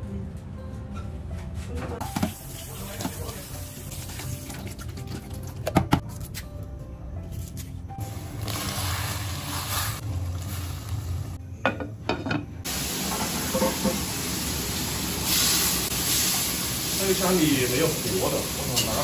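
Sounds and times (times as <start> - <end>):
food sizzling in a pan: 8.0 - 11.4, 12.7 - 19.0.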